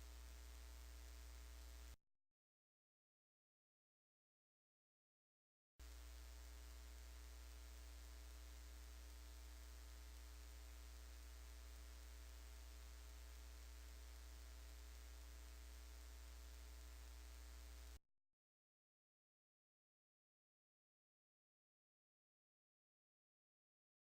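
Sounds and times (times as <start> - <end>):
faint electrical hum with hiss: 0.0 - 2.0, 5.8 - 18.0.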